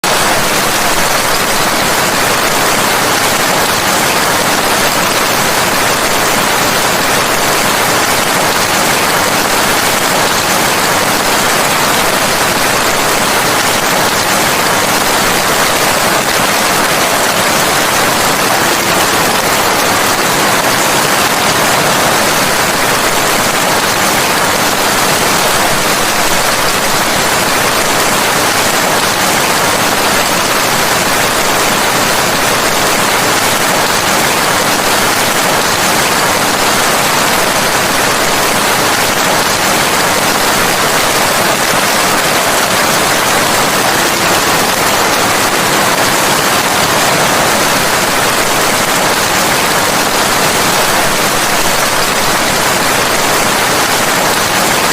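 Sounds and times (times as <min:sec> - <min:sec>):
steady rain: 0:00.0 - 0:54.9.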